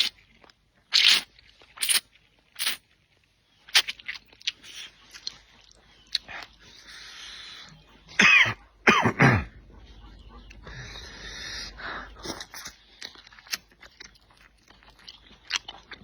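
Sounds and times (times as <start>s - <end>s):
wet chewing and lip smacks: 0.0s - 8.1s, 12.1s - 16.0s
harsh coughs: 8.2s - 9.6s.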